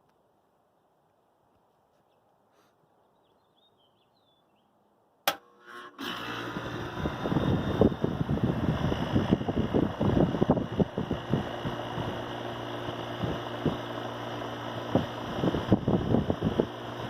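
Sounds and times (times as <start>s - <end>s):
sharp click: 5.3s - 5.5s
air conditioner compressor and fan: 5.3s - 17.0s.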